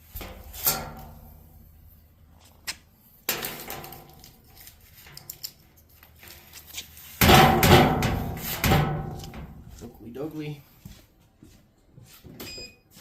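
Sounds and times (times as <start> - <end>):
knocks and metallic clattering: 7.2 - 9.8.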